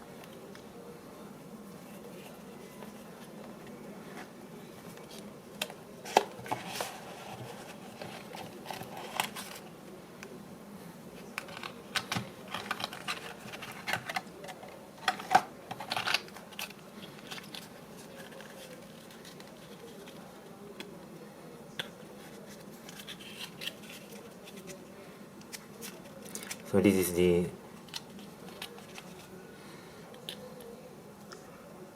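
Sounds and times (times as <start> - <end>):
packaging rustling: 11.3 - 20.3.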